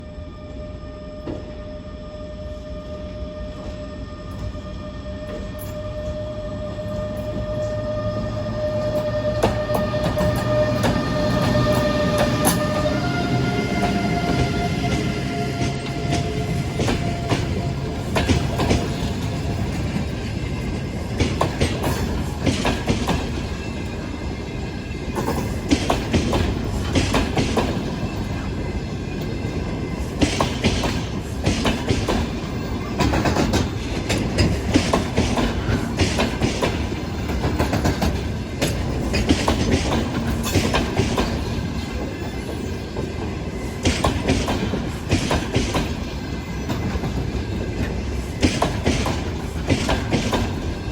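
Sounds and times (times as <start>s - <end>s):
train rumble: 0.0s - 50.9s
train wheels clacking over rail joints: 8.9s - 24.1s, 25.1s - 28.5s, 29.2s - 50.9s.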